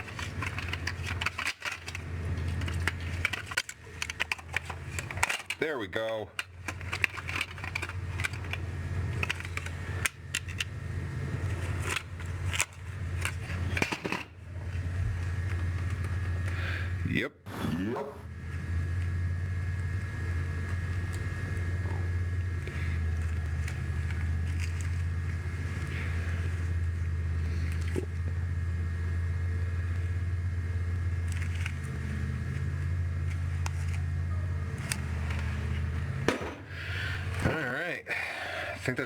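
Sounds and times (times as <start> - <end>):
low mechanical hum: 0.0 - 39.0.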